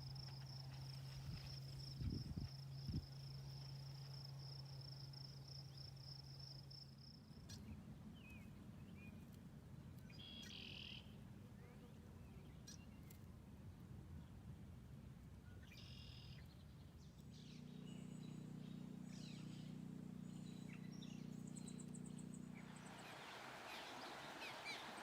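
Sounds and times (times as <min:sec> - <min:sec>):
faint bird chirps: 0:10.0 - 0:13.1, 0:17.3 - 0:25.0
low hum: 0:17.4 - 0:25.0.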